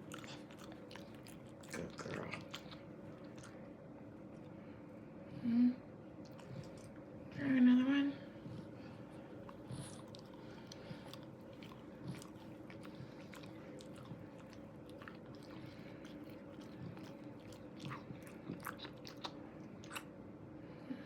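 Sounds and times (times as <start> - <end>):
dog chewing and crunching: 0.0 - 3.8, 8.4 - 20.1.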